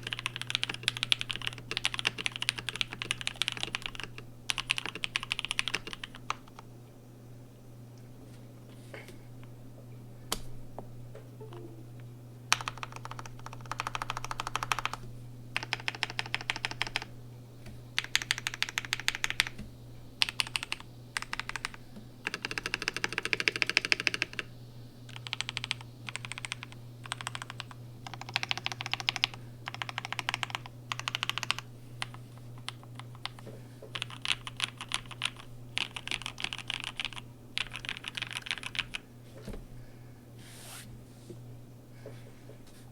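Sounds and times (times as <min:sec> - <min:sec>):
mechanical keyboard typing: 0:00.0 - 0:06.6, 0:12.5 - 0:15.0, 0:15.6 - 0:17.1, 0:18.0 - 0:19.6, 0:20.2 - 0:24.5, 0:25.1 - 0:39.0.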